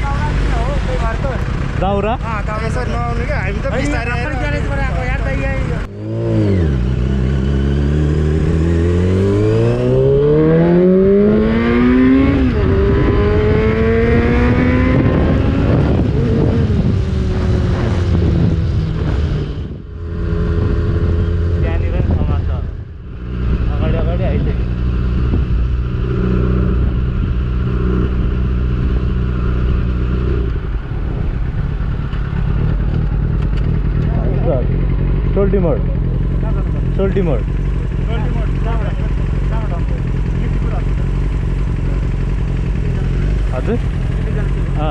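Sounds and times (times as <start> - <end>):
motorcycle engine accelerating: 0.0 - 44.9.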